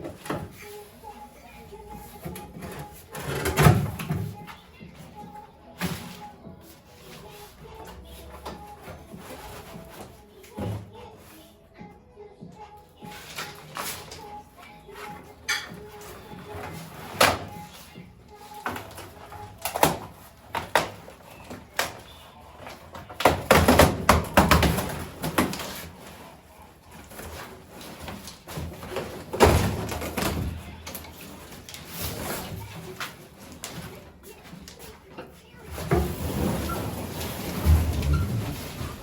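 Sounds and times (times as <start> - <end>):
knocks and thuds of handling: 15.0 - 26.2.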